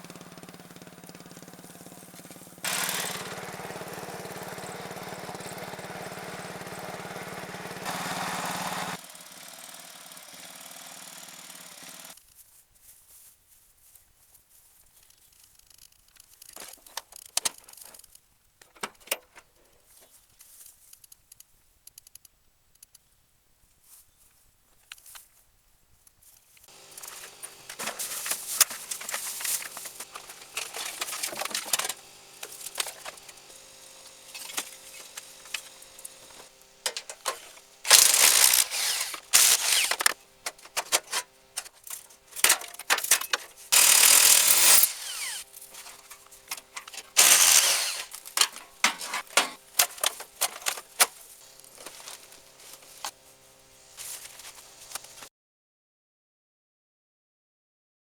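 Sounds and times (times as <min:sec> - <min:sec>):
lawn tractor engine running: 0:00.0 - 0:12.2, 0:26.6 - 0:55.3
rattling clatter: 0:26.7 - 0:53.1.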